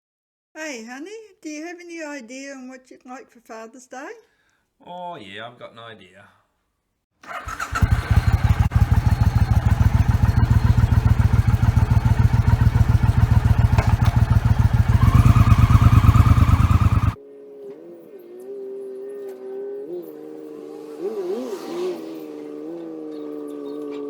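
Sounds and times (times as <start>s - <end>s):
motorcycle engine running: 7.3s - 17.2s.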